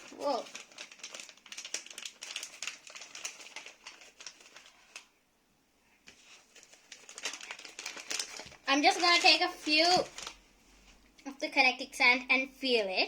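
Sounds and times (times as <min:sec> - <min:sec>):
plastic packaging crinkling: 0:00.0 - 0:05.2, 0:06.1 - 0:10.4.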